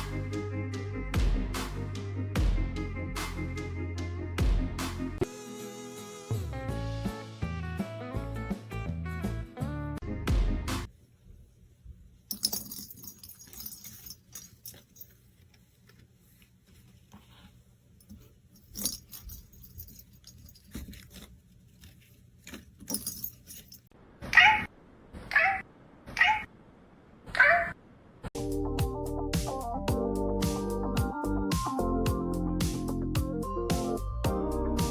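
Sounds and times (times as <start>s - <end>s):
light jingling: 12.3s - 15.4s, 18.0s - 21.3s, 21.9s - 23.9s.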